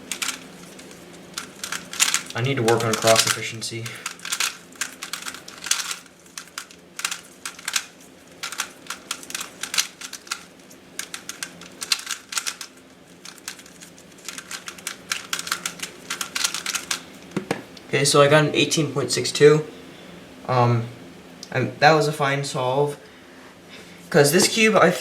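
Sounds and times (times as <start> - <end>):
rapid plastic clicking of puzzle cube: 0.0 - 17.5.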